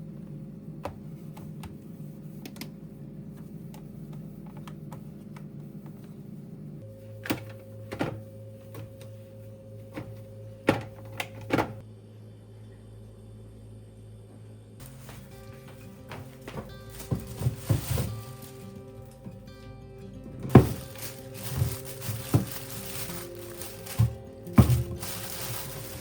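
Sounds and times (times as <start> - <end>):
steady low hum: 0.0 - 26.0
household items clicking: 16.0 - 19.4, 20.5 - 26.0.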